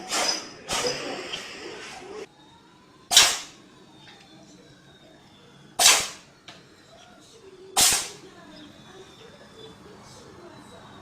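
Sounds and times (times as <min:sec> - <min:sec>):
cat sneezing: 0:00.0 - 0:01.3, 0:05.8 - 0:06.2, 0:07.8 - 0:08.2.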